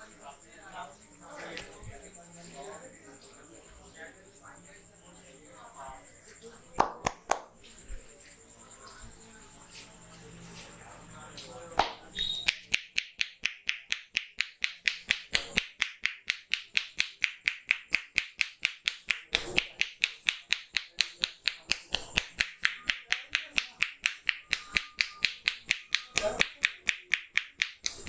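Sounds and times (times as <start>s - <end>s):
finger snap: 6.8s - 7.5s, 11.4s - 28.0s
rapid hand strikes: 11.8s - 28.0s.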